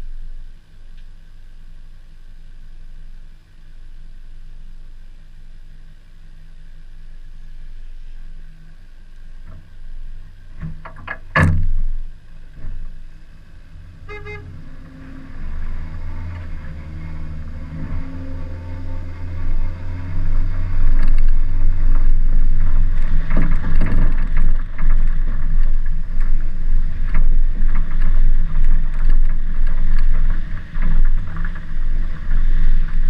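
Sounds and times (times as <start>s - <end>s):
car engine running: 0.0s - 33.0s
car horn toot: 14.0s - 14.9s.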